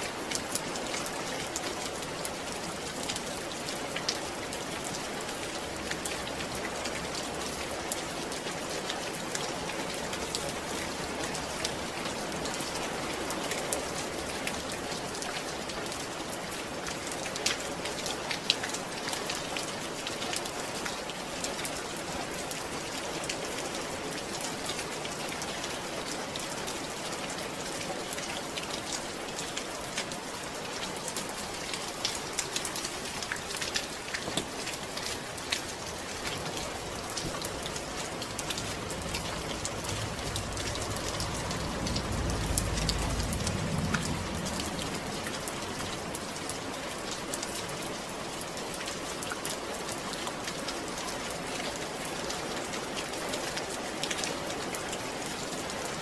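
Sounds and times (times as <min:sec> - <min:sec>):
raindrops ticking on a surface: 0:00.0 - 0:56.0
steady rain hiss: 0:00.0 - 0:56.0.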